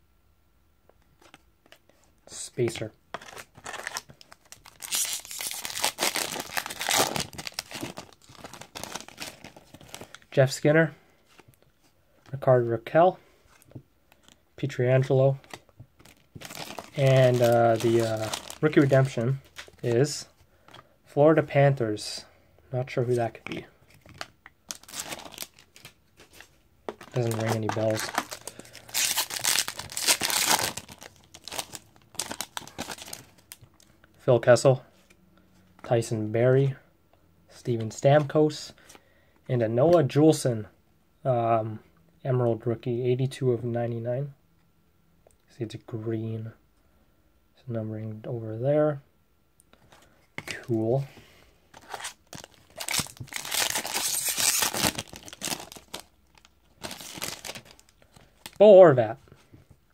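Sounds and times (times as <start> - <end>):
cards being handled: 2.6 - 10.2, 23.1 - 33.7
card pack wrapper crinkling: 2.7 - 10.3, 15.4 - 19.9, 23.2 - 33.8, 51.7 - 58.6.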